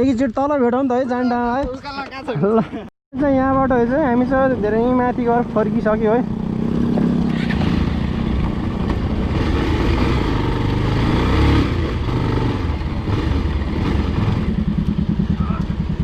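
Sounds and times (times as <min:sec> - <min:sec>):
motorcycle engine running: 0:03.3 - 0:16.0.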